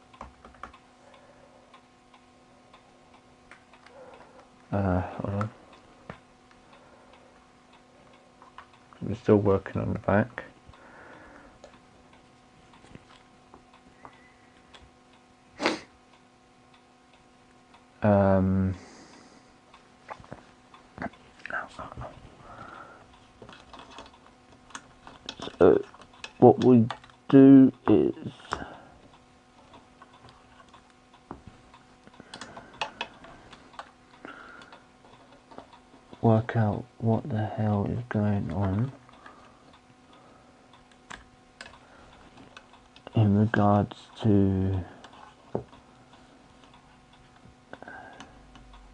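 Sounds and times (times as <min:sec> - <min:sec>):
faint steady hum: 0:00.0 - 0:48.9
small clicks and taps: 0:00.1 - 0:00.9, 0:03.4 - 0:04.7, 0:23.4 - 0:36.2, 0:40.7 - 0:43.2.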